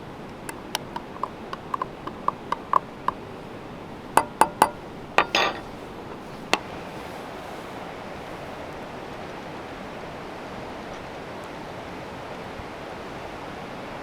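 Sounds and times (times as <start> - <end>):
glass jars clinking: 0.5 - 3.2, 4.1 - 6.6
sharp knocks: 0.5 - 3.2, 4.2 - 5.7.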